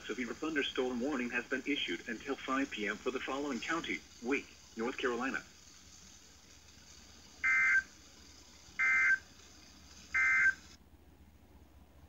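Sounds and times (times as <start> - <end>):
faint broadcast hiss: 0.0 - 12.0
warbling two-tone data bursts: 7.4 - 8.0, 8.8 - 9.3, 10.1 - 10.8.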